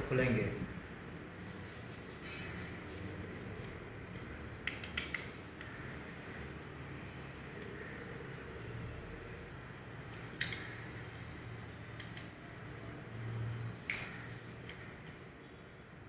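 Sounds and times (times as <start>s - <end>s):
sharp metallic lock clicks: 13.9s - 14.8s.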